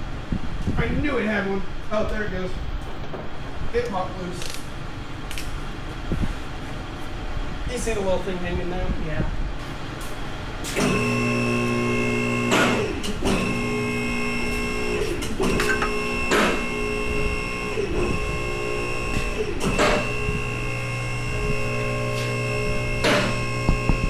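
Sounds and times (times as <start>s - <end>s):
hydraulic pump motor humming: 10.6s - 24.0s
lift clunk: 15.2s - 16.7s.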